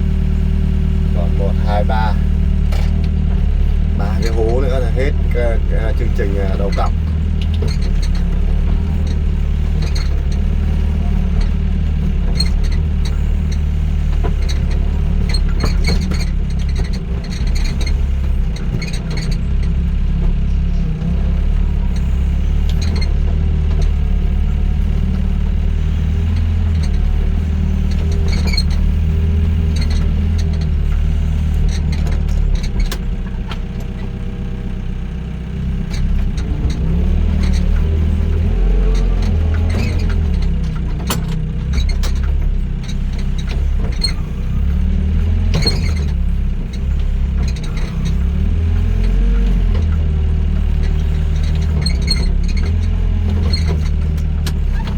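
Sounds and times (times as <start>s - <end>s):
excavator diesel engine running: 0.0s - 54.9s
metallic clanks and clicks: 2.7s - 3.4s, 35.8s - 54.9s.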